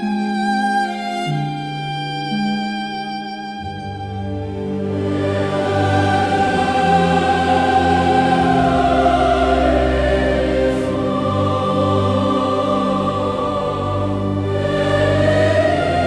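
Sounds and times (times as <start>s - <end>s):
sustained low strings: 0.0s - 16.0s
choir singing long notes: 4.3s - 16.0s.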